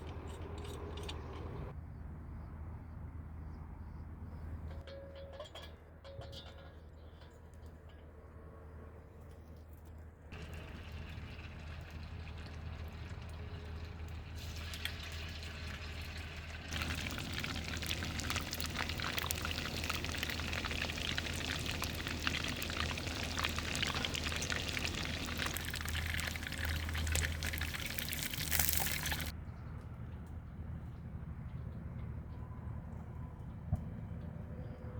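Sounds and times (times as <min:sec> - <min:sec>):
fish sizzling in hot oil: 0:10.4 - 0:29.3.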